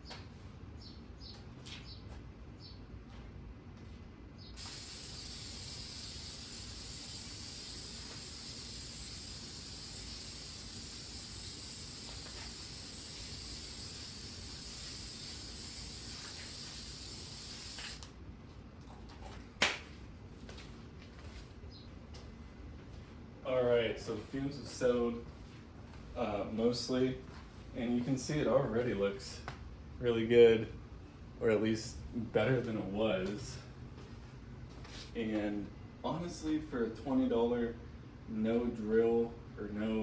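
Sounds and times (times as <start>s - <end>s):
aerosol can spraying: 4.6s - 18.0s.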